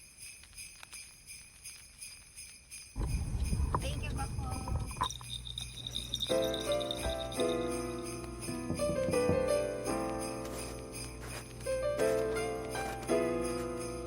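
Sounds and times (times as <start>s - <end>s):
christmas music with shaking bells: 0.0s - 14.0s
low rumbling layer: 3.0s - 6.2s.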